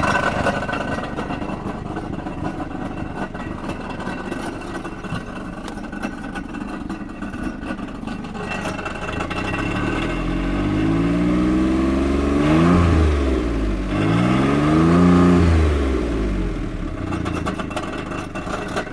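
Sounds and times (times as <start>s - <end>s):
car engine idling with rattle: 0.0s - 18.9s
car engine revving: 8.8s - 18.3s.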